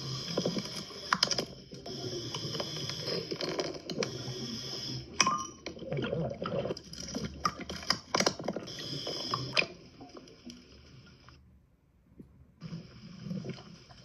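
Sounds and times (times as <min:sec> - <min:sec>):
gurgling bubbles: 0:00.0 - 0:10.7
underwater clicks and clinks: 0:00.4 - 0:01.6, 0:05.2 - 0:05.8, 0:06.6 - 0:08.7.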